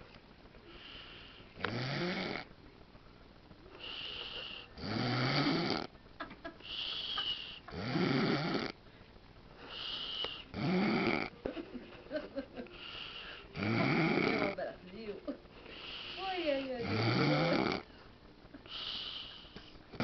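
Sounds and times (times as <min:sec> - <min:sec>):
man snoring heavily: 0:00.8 - 0:02.5, 0:03.9 - 0:05.9, 0:07.7 - 0:08.8, 0:09.7 - 0:11.3, 0:12.8 - 0:14.6, 0:16.8 - 0:17.8.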